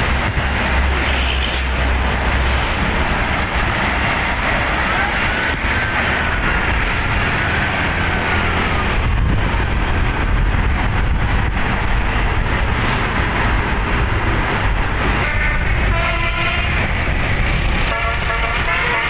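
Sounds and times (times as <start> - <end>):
heavy vehicle engine rumble: 0.0 - 19.0
road noise: 0.0 - 19.0
bus multi-note air horn: 15.2 - 16.9, 17.8 - 19.0.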